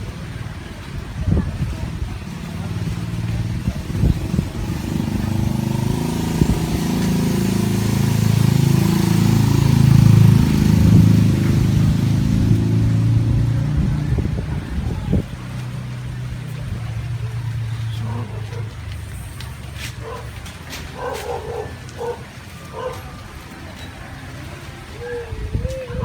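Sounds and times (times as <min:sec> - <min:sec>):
vehicle engine running: 0:00.0 - 0:24.9.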